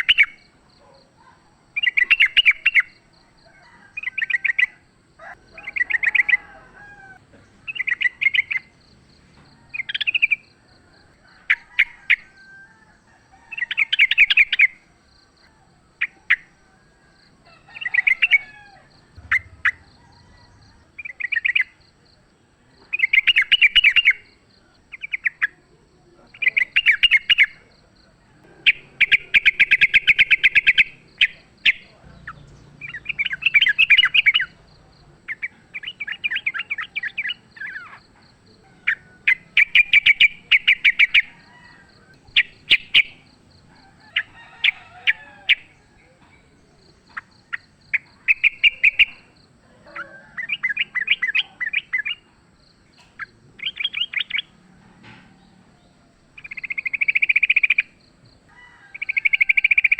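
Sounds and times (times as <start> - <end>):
bird rattling song: 19.2 - 21.8, 42.3 - 45.8.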